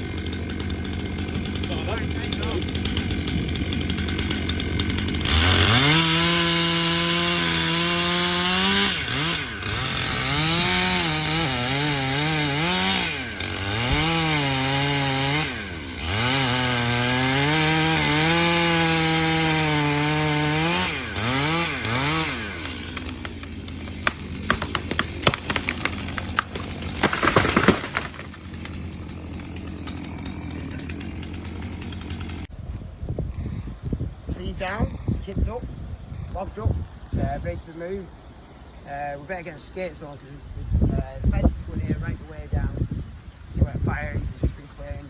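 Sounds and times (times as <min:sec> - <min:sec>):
chainsaw revving and cutting wood: 0:00.0 - 0:32.5.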